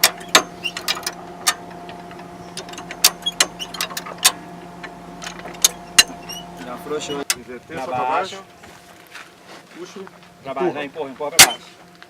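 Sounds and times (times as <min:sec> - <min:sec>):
jack metallic clicks: 0:00.0 - 0:07.4
low hum: 0:00.0 - 0:09.5.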